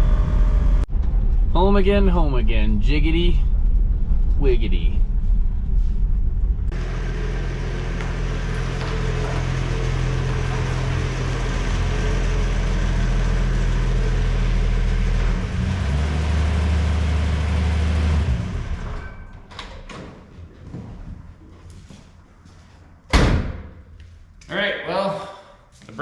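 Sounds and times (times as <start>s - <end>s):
car engine running: 0.0s - 18.9s.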